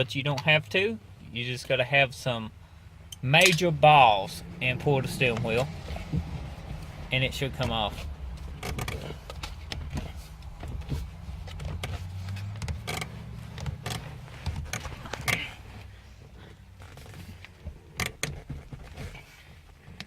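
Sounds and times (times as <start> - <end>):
low hum: 2.5 - 17.2
steering wheel clunking and rattling: 3.1 - 20.0.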